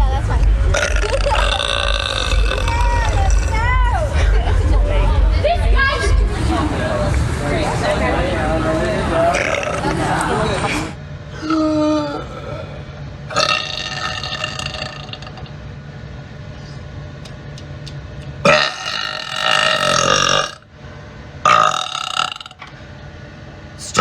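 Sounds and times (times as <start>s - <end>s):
woman burping loudly: 0.8s - 3.2s, 11.3s - 15.5s, 18.4s - 20.7s, 21.5s - 22.7s.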